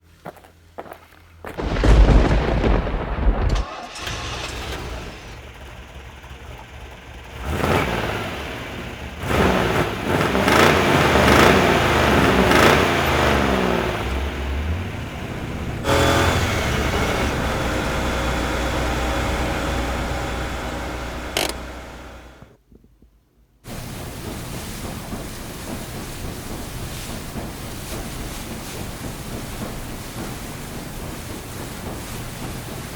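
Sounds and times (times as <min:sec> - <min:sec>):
car engine revving: 0:03.6 - 0:22.5.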